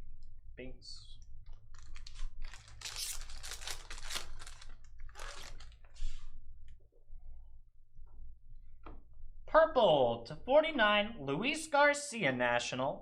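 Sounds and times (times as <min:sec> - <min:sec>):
wrapper tearing and crinkling: 0:01.7 - 0:06.0
cards being handled: 0:01.8 - 0:06.2.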